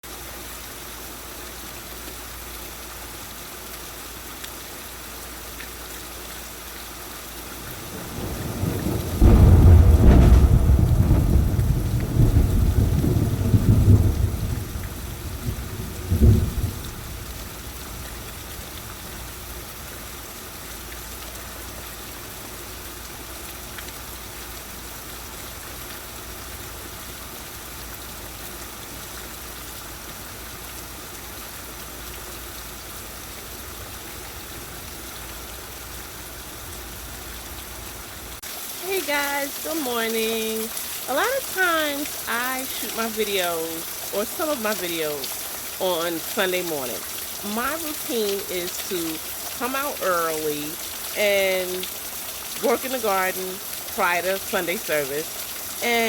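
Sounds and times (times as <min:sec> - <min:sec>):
heavy rain falling: 0:00.0 - 0:56.0
sharp thunder clap: 0:07.6 - 0:17.3
deep roll of thunder: 0:07.6 - 0:19.1.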